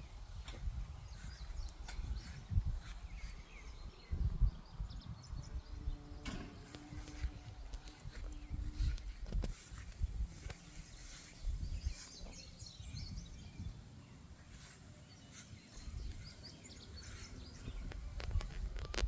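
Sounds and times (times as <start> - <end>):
low rumbling on microphone: 0.0 - 13.8.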